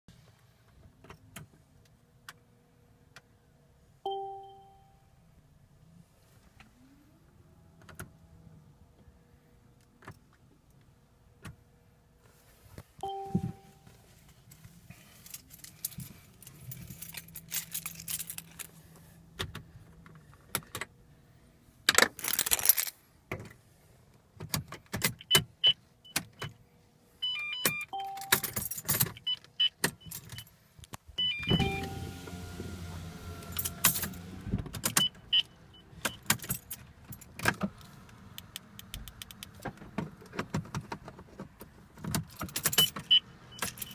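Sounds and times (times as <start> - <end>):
short electronic beeps: 13.0 - 13.8, 27.2 - 28.4, 31.2 - 32.1, 35.0 - 36.3
keys jangling: 15.2 - 18.8, 22.2 - 22.9, 28.2 - 29.4, 33.5 - 34.2, 36.1 - 37.4, 42.2 - 43.9.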